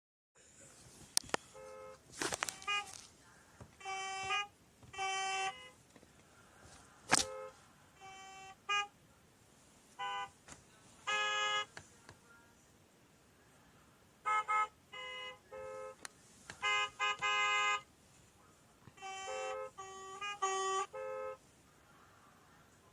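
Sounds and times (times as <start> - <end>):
car horns honking: 1.2 - 6.0, 6.6 - 9.0, 9.9 - 11.8, 14.2 - 18.0, 18.9 - 21.5.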